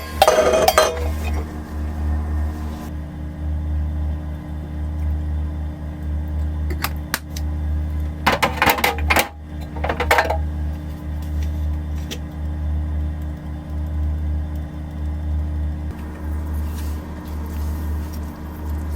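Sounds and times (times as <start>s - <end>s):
clinking clattering rattle: 0.0s - 1.4s, 8.3s - 10.4s
steady low hum: 0.0s - 18.9s.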